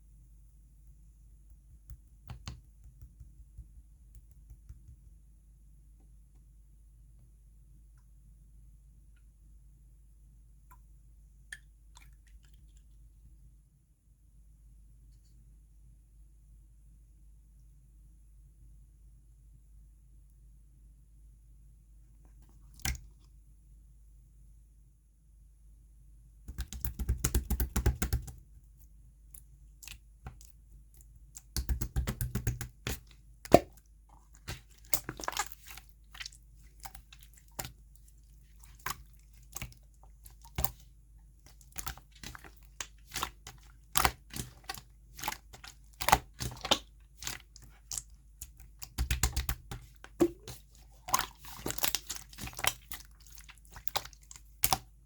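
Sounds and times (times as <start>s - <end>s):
slime clicking and popping: 26.5s - 28.3s, 31.4s - 33.8s, 41.7s - 53.1s.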